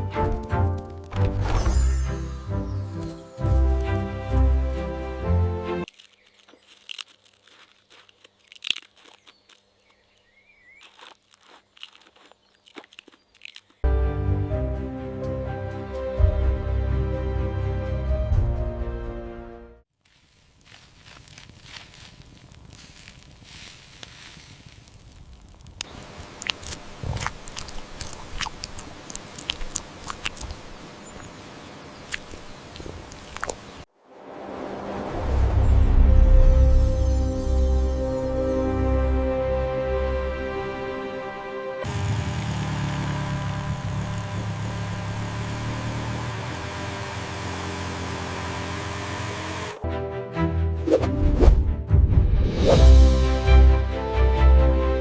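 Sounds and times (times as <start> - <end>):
soft crunches and clicks: 5.8 - 13.8, 20.0 - 31.4, 32.0 - 33.9.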